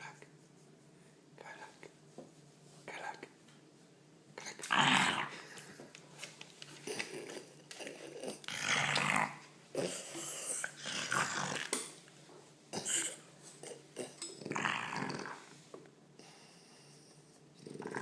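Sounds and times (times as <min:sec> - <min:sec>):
dog grunting: 0:04.4 - 0:05.5, 0:06.9 - 0:11.7, 0:12.7 - 0:15.5, 0:17.6 - 0:18.0.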